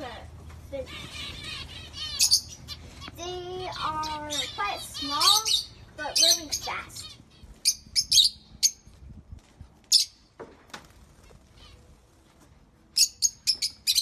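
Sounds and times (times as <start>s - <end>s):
finches chirping: 0.7s - 8.8s.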